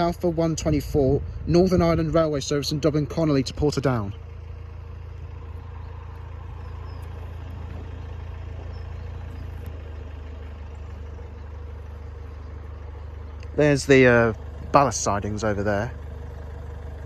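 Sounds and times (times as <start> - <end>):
vehicle engine idling: 0.0 - 17.0
bird chirps: 5.4 - 13.6.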